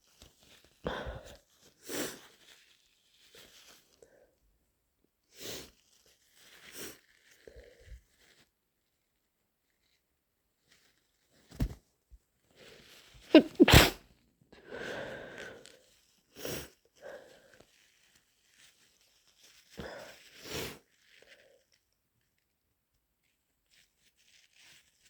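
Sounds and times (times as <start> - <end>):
person sneezing: 13.3 - 14.0
snotty breathing: 13.3 - 14.0.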